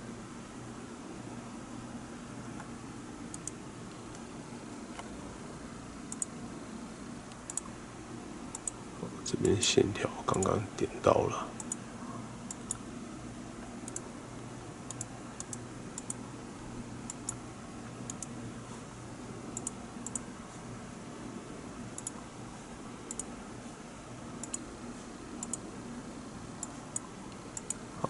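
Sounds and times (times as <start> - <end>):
low steady hum: 0.0 - 28.0
computer mouse clicking: 3.3 - 4.2, 6.1 - 6.3, 7.3 - 7.7, 8.5 - 8.8, 11.6 - 11.8, 12.5 - 12.8, 13.6 - 14.1, 14.9 - 16.2, 17.1 - 17.4, 18.1 - 18.3, 19.6 - 20.3, 22.0 - 22.2, 23.1 - 23.3, 24.4 - 24.6, 25.4 - 25.6, 26.6 - 27.8.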